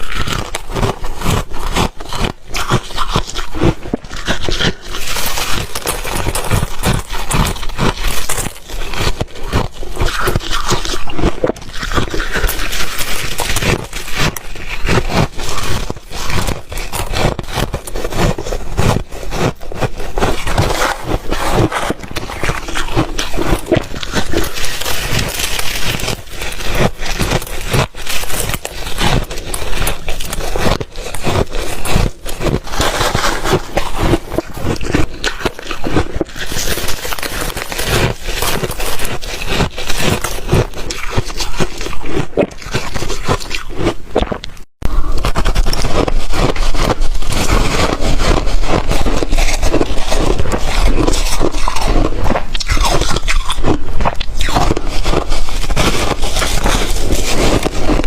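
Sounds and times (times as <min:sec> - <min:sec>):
ice crunching between teeth: 0:00.0 - 0:58.0.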